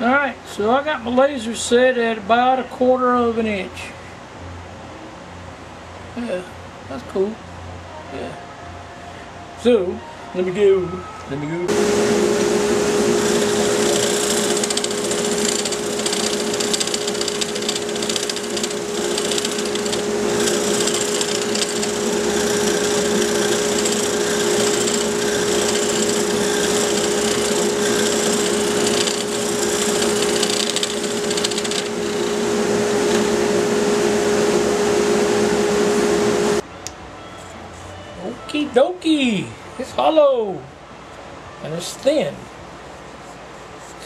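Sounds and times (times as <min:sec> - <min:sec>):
wood lathe humming: 0:11.7 - 0:36.6
hollowing tool scraping wood: 0:12.9 - 0:33.4.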